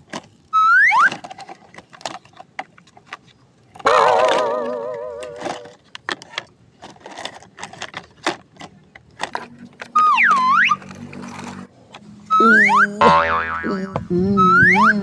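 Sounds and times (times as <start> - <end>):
plastic toys clattering: 0.0 - 12.1
swooping whistle-like tone: 10.0 - 10.8, 12.3 - 13.0, 14.4 - 15.0.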